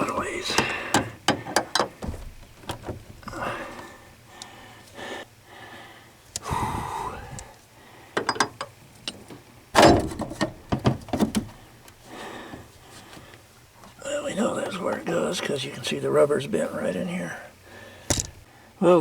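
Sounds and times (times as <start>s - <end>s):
metal clunks and knocks: 0.1s - 3.4s, 8.2s - 11.6s, 18.1s - 18.4s.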